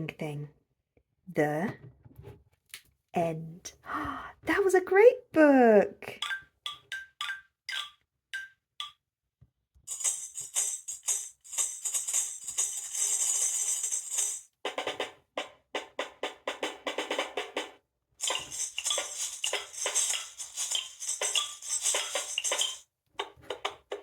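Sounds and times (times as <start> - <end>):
quick rattling shakes: 9.9 - 14.5, 18.2 - 22.8
tambourine jingling: 9.9 - 14.5, 18.2 - 22.8
tapped percussion notes: 9.9 - 15.0, 15.8 - 24.0.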